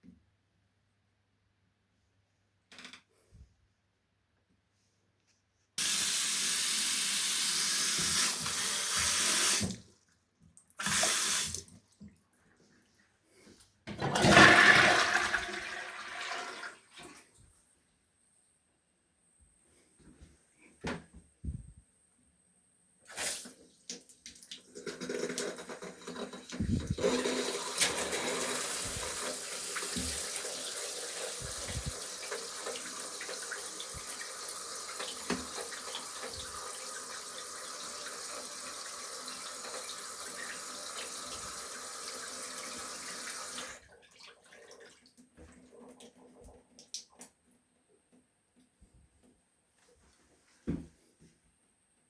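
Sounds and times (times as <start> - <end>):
shower water running: 5.8 - 9.8, 10.8 - 11.8, 23.1 - 43.8.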